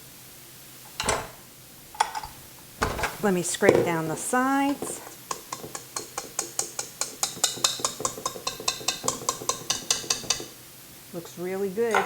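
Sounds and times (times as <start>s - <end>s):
spatula scraping a mixing bowl: 3.1s - 10.5s.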